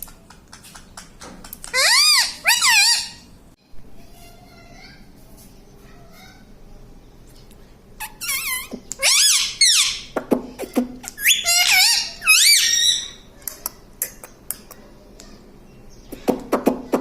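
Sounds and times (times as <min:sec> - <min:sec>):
parrot shrill calls: 0:01.7 - 0:03.3, 0:08.0 - 0:10.1, 0:11.1 - 0:13.3.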